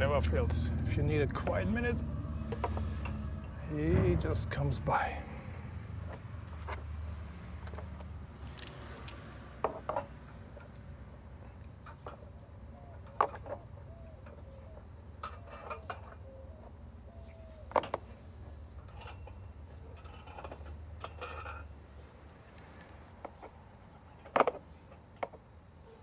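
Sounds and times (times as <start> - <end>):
low steady rumble: 0.0 - 9.2
metal hardware clinking: 8.4 - 9.9, 22.4 - 23.0.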